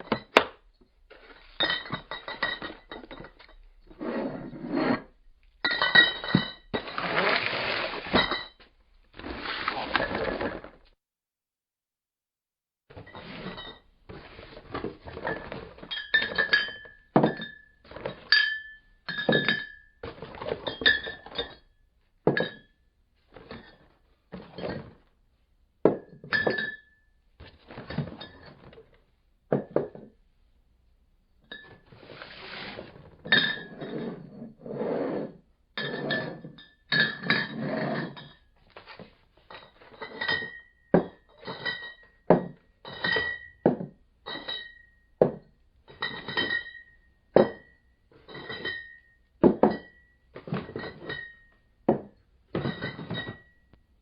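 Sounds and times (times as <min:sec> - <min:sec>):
bottles rattling in a box: 0:01.1 - 0:03.8, 0:05.7 - 0:08.6, 0:09.2 - 0:10.8, 0:13.0 - 0:21.7, 0:35.9 - 0:53.7
glass bottles clinking: 0:01.2 - 0:03.7, 0:05.6 - 0:08.6, 0:14.7 - 0:21.7, 0:22.3 - 0:22.8, 0:25.9 - 0:27.0, 0:33.2 - 0:33.9, 0:35.8 - 0:38.5, 0:39.5 - 0:53.6.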